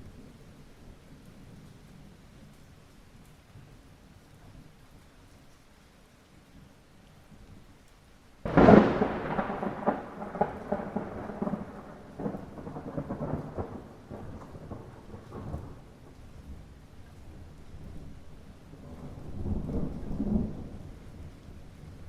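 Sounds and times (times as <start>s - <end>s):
light rain: 0.0s - 22.0s
thunderclap rumbling: 8.4s - 22.0s.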